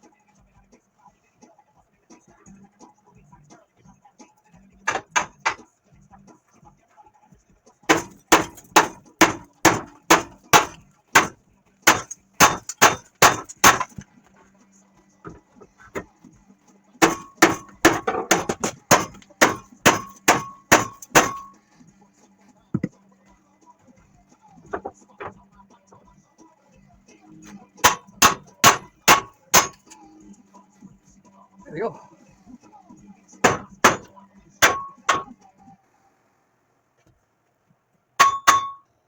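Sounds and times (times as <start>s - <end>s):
hammer striking steel: 4.9s - 5.6s, 7.9s - 14.0s, 17.0s - 21.6s, 27.8s - 30.0s, 33.4s - 35.4s, 38.2s - 38.9s.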